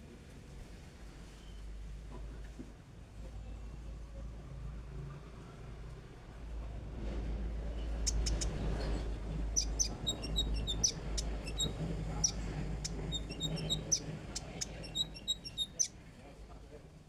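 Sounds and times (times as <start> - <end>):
steady low hum: 8.1 - 15.9
songbird chirping: 8.1 - 16.0.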